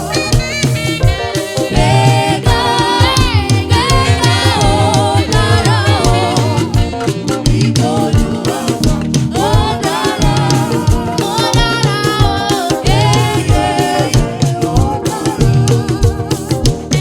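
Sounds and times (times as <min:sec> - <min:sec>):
bass and drum beat: 0:00.0 - 0:17.0
gospel choir singing: 0:00.0 - 0:17.0.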